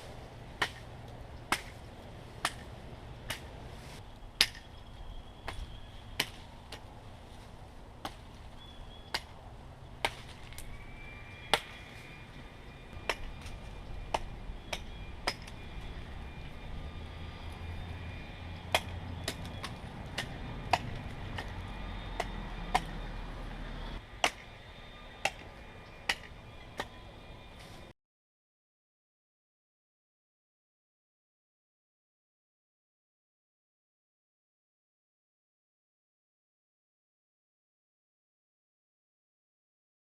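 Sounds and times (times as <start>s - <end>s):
hatchet chopping wood: 0.6s - 0.9s, 1.5s - 1.8s, 2.4s - 2.7s, 4.4s - 4.7s, 6.2s - 6.8s, 13.0s - 13.5s, 14.1s - 15.6s, 18.7s - 21.6s, 22.2s - 23.0s, 24.2s - 24.5s, 25.2s - 27.0s.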